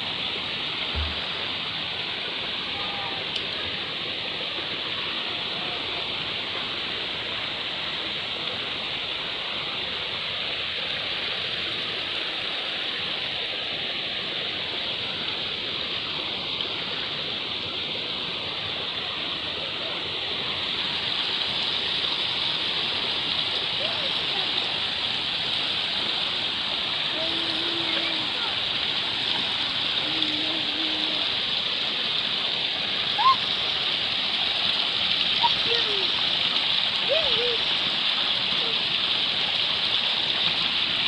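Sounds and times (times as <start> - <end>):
running water rushing: 0.0 - 41.0.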